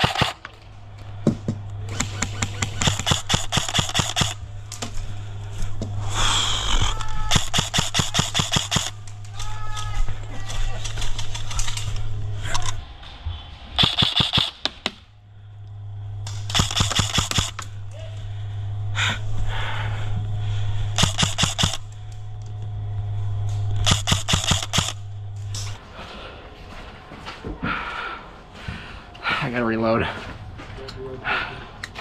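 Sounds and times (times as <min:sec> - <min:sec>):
airsoft guns firing bursts: 0:00.0 - 0:00.5, 0:01.8 - 0:04.5, 0:07.2 - 0:09.8, 0:13.8 - 0:15.0, 0:16.4 - 0:17.6, 0:20.9 - 0:21.8, 0:23.8 - 0:25.0
steady low hum: 0:00.0 - 0:32.0.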